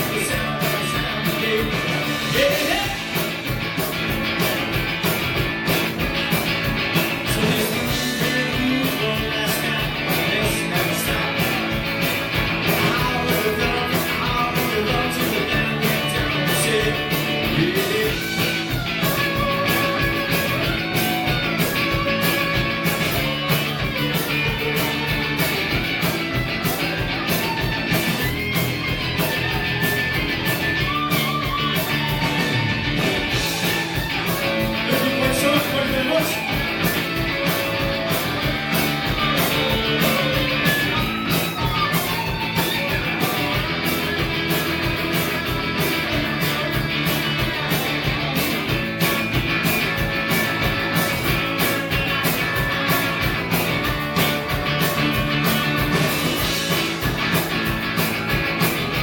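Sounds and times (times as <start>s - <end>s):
person singing: 0.0s - 3.2s, 7.2s - 20.1s, 33.3s - 43.8s
rock band playing live: 0.0s - 59.0s.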